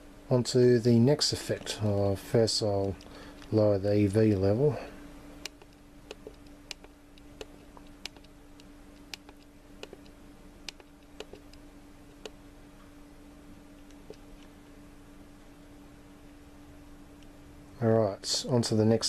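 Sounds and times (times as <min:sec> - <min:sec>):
faint steady hum: 0:00.0 - 0:19.0
camcorder buttons clicking: 0:05.4 - 0:10.1.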